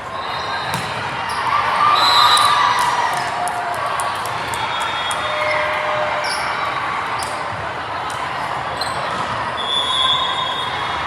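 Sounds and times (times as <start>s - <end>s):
crowd chatter in a gym: 0.0s - 11.0s.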